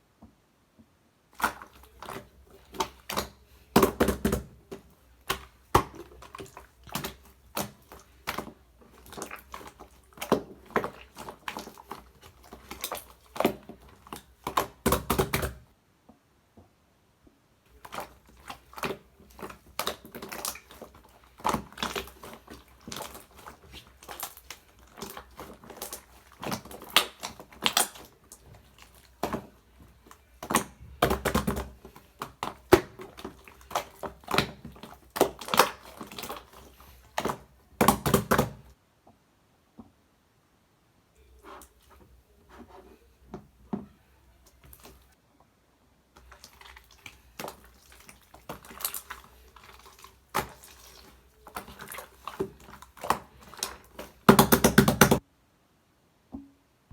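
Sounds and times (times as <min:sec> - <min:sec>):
slime squished by hand: 0:01.4 - 0:15.6, 0:17.7 - 0:38.8, 0:46.2 - 0:55.2.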